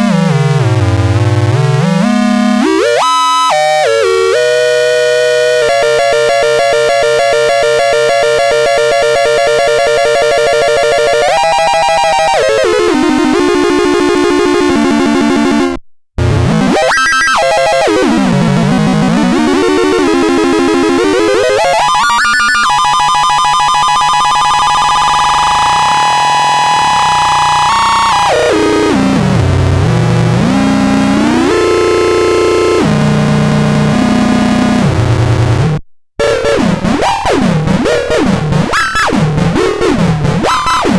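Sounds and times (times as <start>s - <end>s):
buzzy synthesizer tones: 0.0s - 40.9s.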